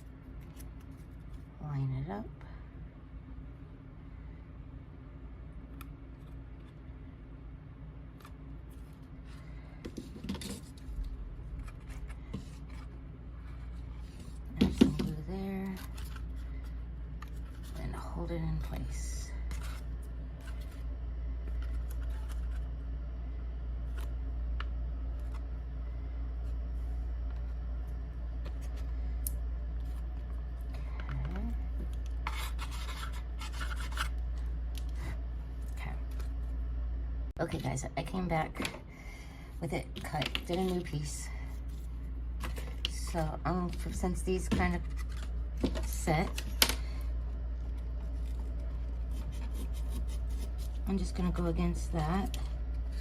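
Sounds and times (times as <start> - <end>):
steady low hum: 0.0 - 53.0
paper and board rustling: 8.6 - 20.8, 32.2 - 34.2, 40.0 - 46.7, 47.6 - 53.0
scratching and rubbing on paper: 32.2 - 34.2, 48.0 - 51.0.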